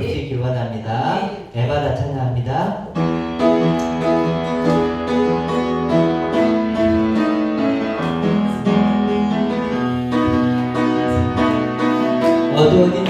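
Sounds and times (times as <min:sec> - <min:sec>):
keyboard playing held chords: 0:03.0 - 0:13.0.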